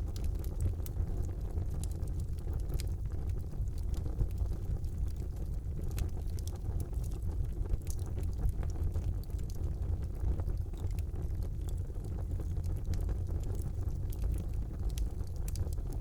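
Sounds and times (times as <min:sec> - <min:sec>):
fire crackling and popping: 0:00.0 - 0:16.0
fire flames rumbling: 0:00.0 - 0:16.0.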